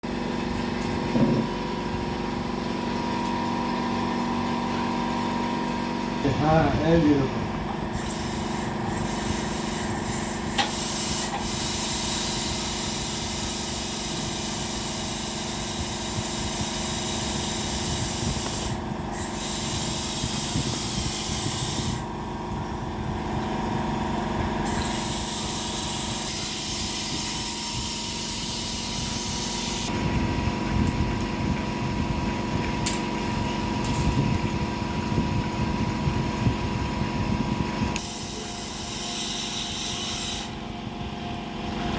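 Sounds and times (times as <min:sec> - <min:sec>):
dental drill whining: 0:07.9 - 0:22.1, 0:24.6 - 0:29.9, 0:38.0 - 0:40.6
dental suction hiss and hum: 0:08.0 - 0:22.1, 0:24.7 - 0:29.9, 0:38.0 - 0:40.6.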